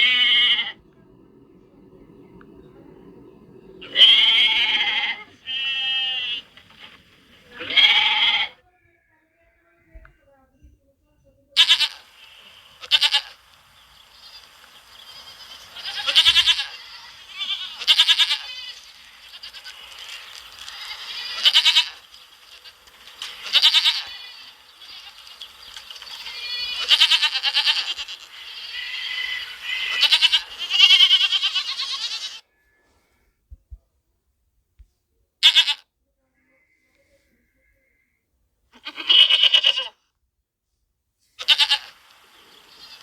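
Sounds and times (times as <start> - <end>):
goat bleating: 0.0 - 0.8, 3.8 - 6.9, 7.5 - 8.6, 11.6 - 13.5, 14.2 - 32.4, 35.4 - 35.8, 38.8 - 40.0, 41.4 - 43.0.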